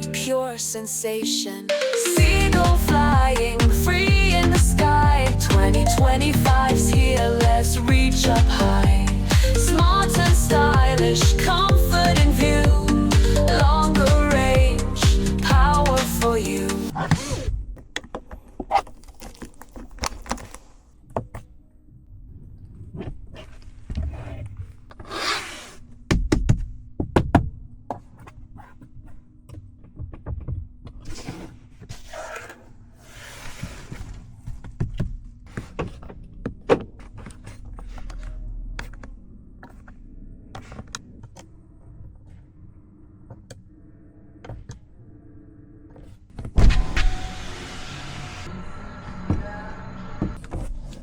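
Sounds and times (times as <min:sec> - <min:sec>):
electric window motor whirring: 0:46.6 - 0:50.5.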